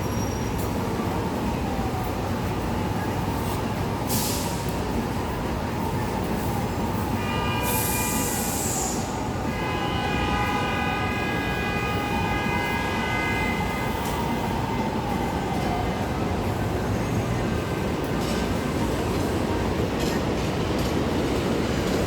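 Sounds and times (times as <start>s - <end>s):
subway train rumble: 0.0s - 22.0s
hiss: 7.7s - 9.1s.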